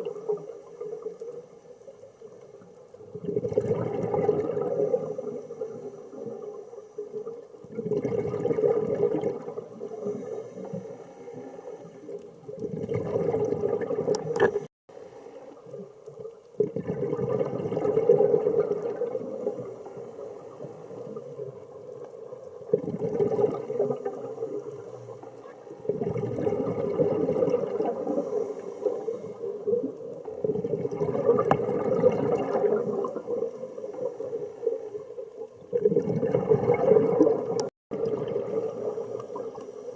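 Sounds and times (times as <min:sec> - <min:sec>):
diver's bubbling exhalations: 0:03.1 - 0:05.4, 0:07.7 - 0:10.6, 0:12.6 - 0:14.7, 0:16.6 - 0:19.8, 0:22.7 - 0:24.4, 0:25.8 - 0:29.2, 0:30.3 - 0:33.4, 0:35.7 - 0:39.5.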